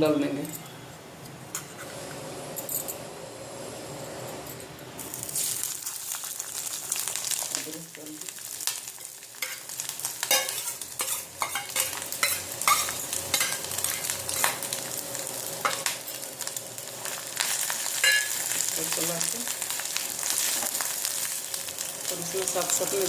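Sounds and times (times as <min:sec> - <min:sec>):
spoon scraping a pan: 0:01.5 - 0:02.0, 0:09.4 - 0:14.7, 0:17.4 - 0:18.6
ginger sizzling in a pan: 0:05.0 - 0:23.0.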